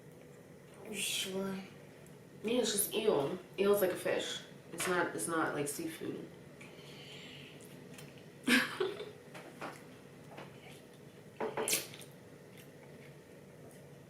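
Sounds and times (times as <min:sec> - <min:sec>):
wet eating squishes: 0:07.6 - 0:08.3, 0:11.7 - 0:14.0.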